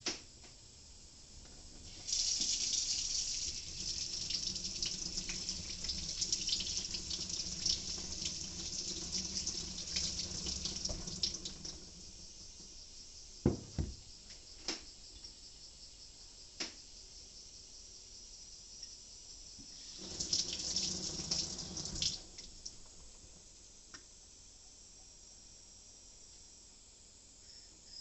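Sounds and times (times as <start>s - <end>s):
knocks: 13.5s - 14.0s.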